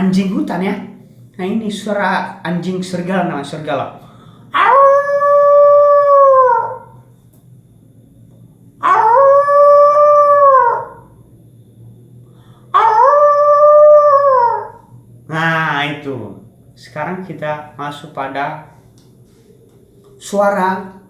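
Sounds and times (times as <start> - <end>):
man imitating wolf howl: 4.5 - 7.0, 8.8 - 11.1, 12.7 - 16.1.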